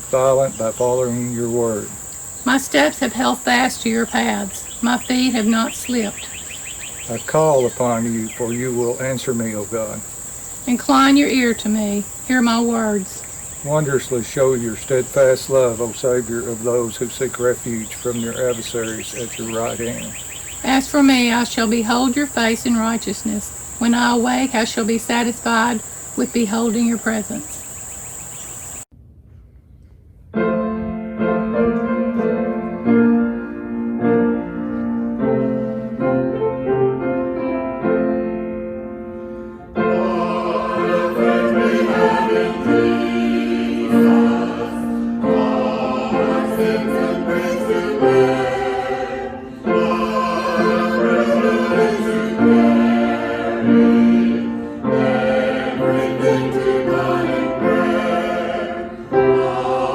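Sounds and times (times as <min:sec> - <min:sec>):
choir singing a sacred song: 0:00.2 - 0:27.8, 0:39.8 - 0:59.9
keyboard chords: 0:30.6 - 0:59.9.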